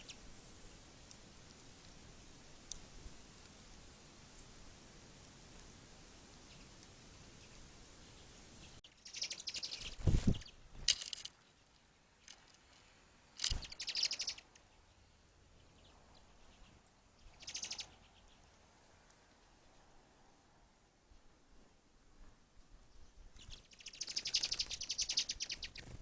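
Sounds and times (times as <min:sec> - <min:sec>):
songbirds chattering: 0:00.0 - 0:04.6, 0:06.4 - 0:12.6, 0:13.4 - 0:19.9, 0:23.0 - 0:26.0.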